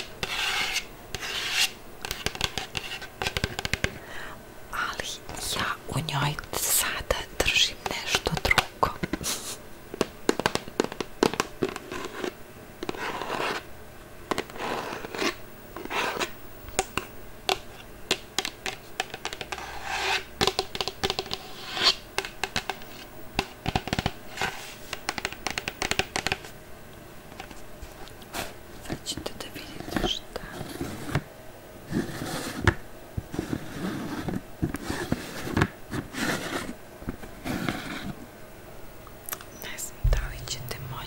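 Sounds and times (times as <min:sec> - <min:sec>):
hands scratching and scraping object: 0:00.0 - 0:03.9, 0:10.3 - 0:13.7, 0:14.3 - 0:26.5, 0:33.3 - 0:38.2.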